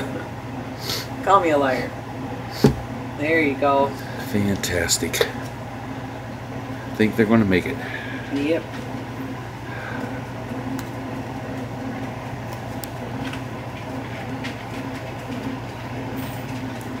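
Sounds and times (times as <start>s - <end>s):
machine humming: 0.0s - 17.0s.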